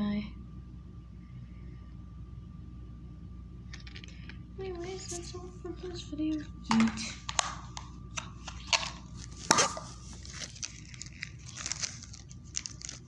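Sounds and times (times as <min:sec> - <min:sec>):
packaging rustling: 0:03.8 - 0:13.0.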